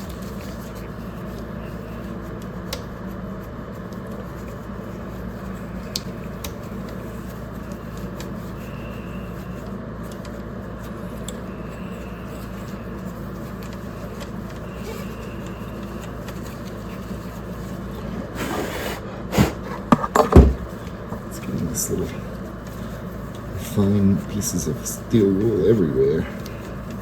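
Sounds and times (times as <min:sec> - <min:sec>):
steel wool scrubbing: 0:11.7 - 0:20.2.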